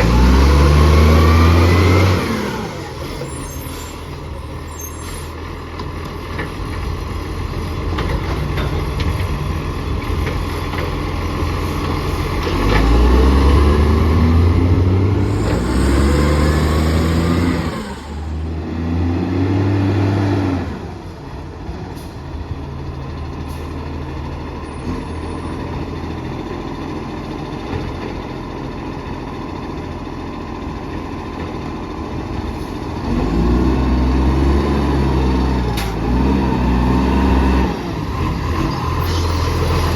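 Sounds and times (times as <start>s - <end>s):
truck engine revving: 0.0s - 4.6s, 11.2s - 20.8s, 33.0s - 39.9s
short air hiss: 15.2s - 18.4s.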